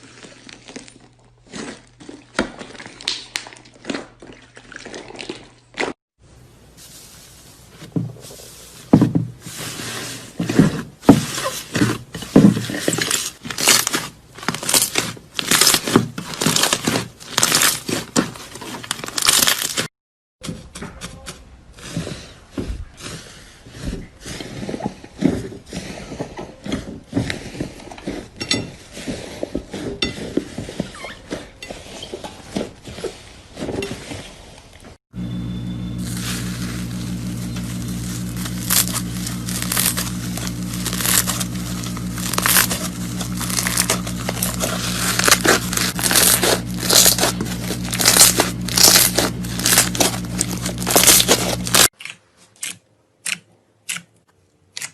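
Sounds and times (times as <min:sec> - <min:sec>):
crunchy slime crackling and popping: 0:13.0 - 0:18.1, 0:18.8 - 0:19.9, 0:36.0 - 0:52.0.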